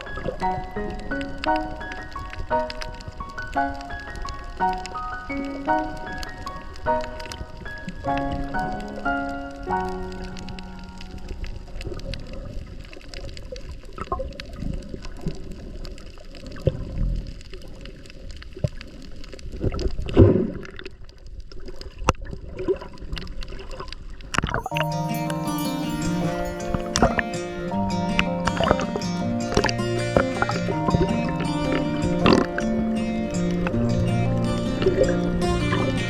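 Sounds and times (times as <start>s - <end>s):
tune of clear held notes: 24.6s - 36.0s.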